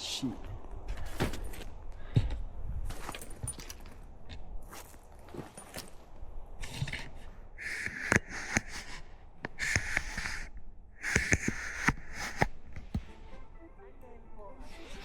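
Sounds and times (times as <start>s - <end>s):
runner breathing hard: 6.6s - 13.1s.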